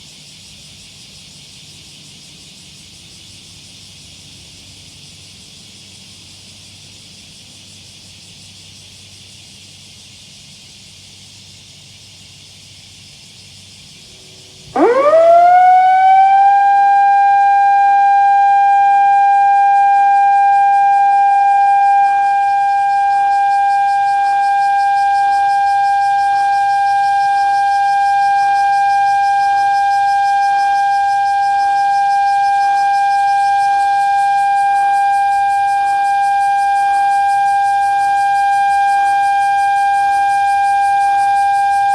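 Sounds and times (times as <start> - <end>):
outdoor siren: 14.2 - 41.9.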